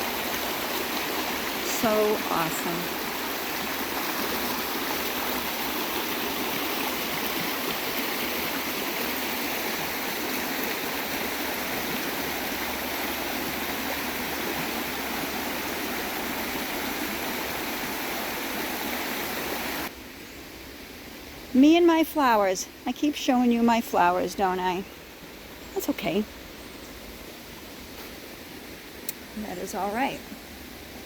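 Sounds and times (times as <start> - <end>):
river water rushing: 0.0 - 19.9.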